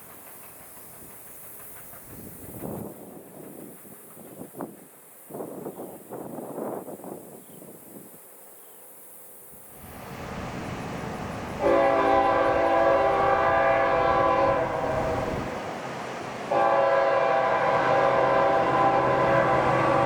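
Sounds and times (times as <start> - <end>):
train rumbling: 0.0 - 20.0
locomotive air horn: 11.6 - 15.5, 16.5 - 20.0.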